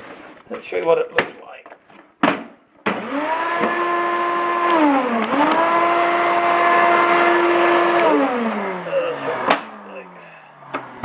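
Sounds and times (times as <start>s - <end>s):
shop vac motor whining: 2.9s - 11.0s.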